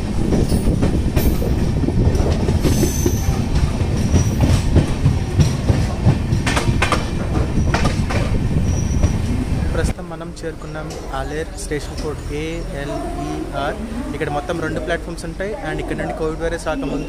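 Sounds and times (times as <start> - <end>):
wheels squealing: 0.0 - 9.9, 10.6 - 17.0
train rumbling on rails: 0.0 - 17.0.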